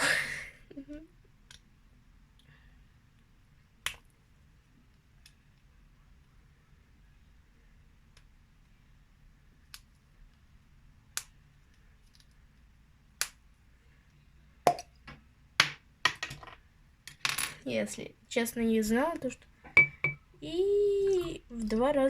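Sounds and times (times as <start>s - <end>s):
containers clicking and tapping: 19.7s - 20.3s.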